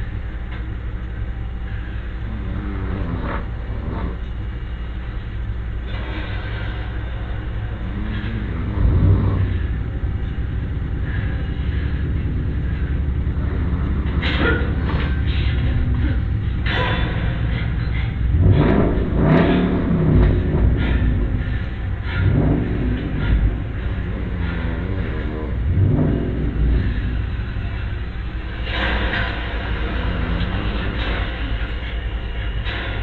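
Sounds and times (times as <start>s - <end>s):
steady low hum: 0.0s - 33.0s
man snoring: 2.3s - 4.2s.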